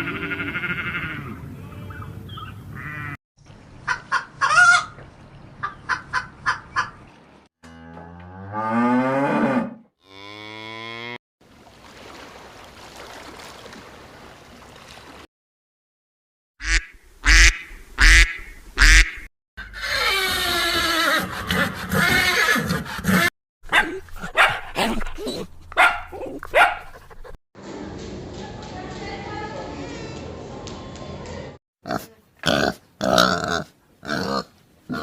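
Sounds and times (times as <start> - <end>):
cattle mooing: 7.6 - 11.2.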